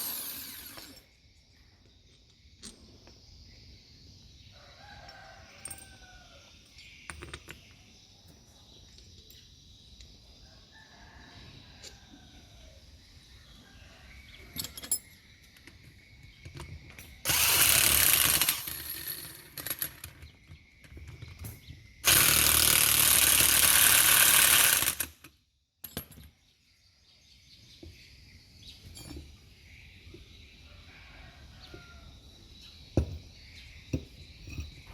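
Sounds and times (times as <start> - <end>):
power tool running: 0.0 - 1.0, 17.3 - 19.2, 22.0 - 25.2.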